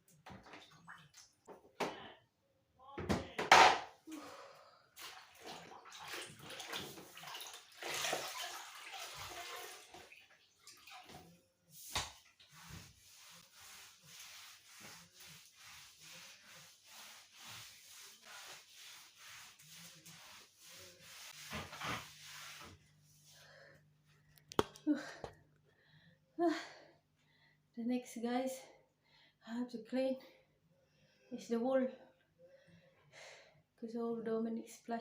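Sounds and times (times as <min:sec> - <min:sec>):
wet scrubbing on floor: 0:05.0 - 0:23.5.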